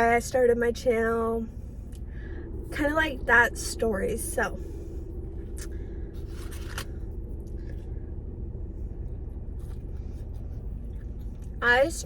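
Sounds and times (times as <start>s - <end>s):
low hum: 0.0s - 12.0s
crunching bites and chews: 5.5s - 7.9s, 9.2s - 11.6s.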